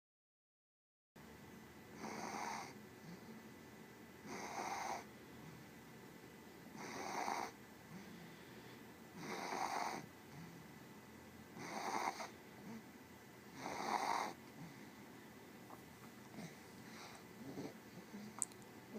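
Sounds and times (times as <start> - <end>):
person snoring: 4.3 - 5.1, 6.8 - 8.2, 9.2 - 10.6, 11.6 - 12.8, 13.5 - 14.4.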